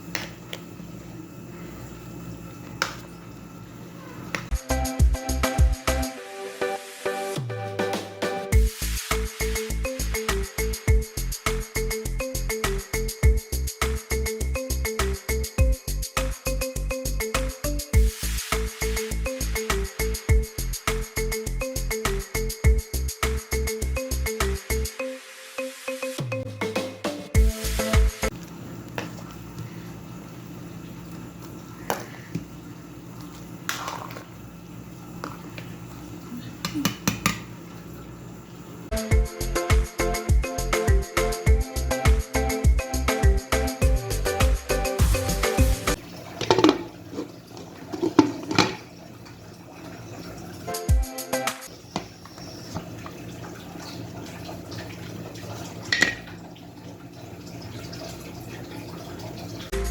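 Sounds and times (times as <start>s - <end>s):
tap water running into sink: 30.8s - 38.2s, 46.0s - 50.8s, 51.7s - 59.7s.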